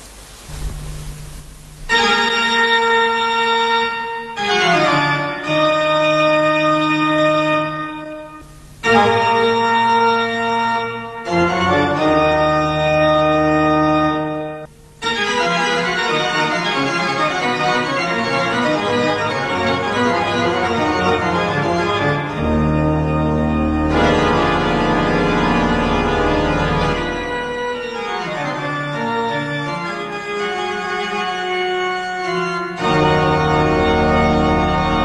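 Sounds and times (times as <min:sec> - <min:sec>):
pipe organ playing: 0:01.9 - 0:35.0.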